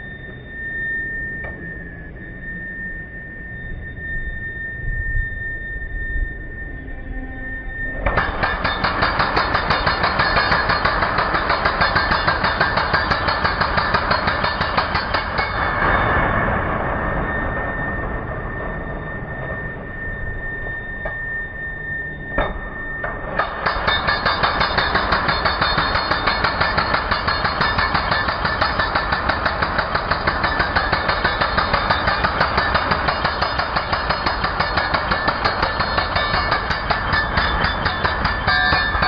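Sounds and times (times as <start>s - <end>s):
hum with high whine: 0.0s - 39.0s
demolition hammer pounding: 8.1s - 16.0s, 23.4s - 39.0s.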